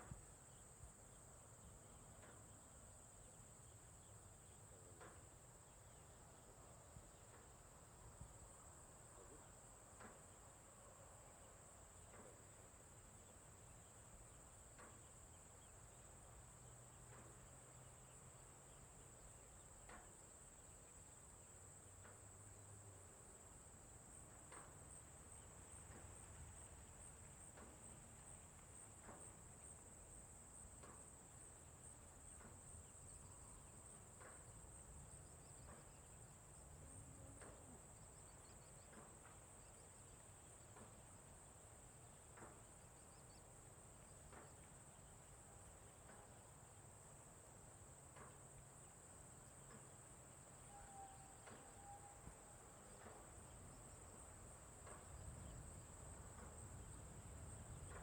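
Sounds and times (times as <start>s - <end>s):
soft ticks: 24.5s - 26.4s, 27.4s - 29.9s, 37.4s - 37.6s
crickets trilling: 47.8s - 58.0s.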